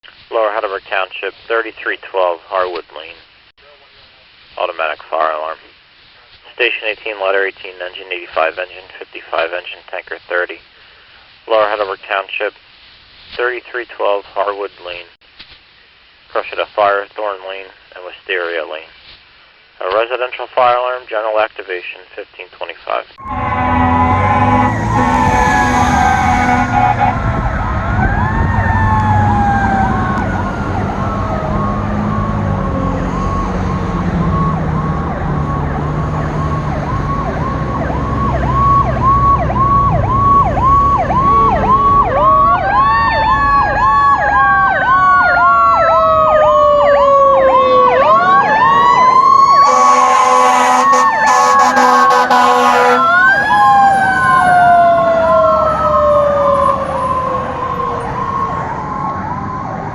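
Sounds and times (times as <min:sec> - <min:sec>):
loud horn blasts: 0:23.2 - 0:28.0, 0:49.6 - 0:53.2
diesel engine rumble: 0:23.2 - 0:45.2
electronic siren wail: 0:23.2 - 0:59.9
rapid siren yelp: 0:23.2 - 0:59.9.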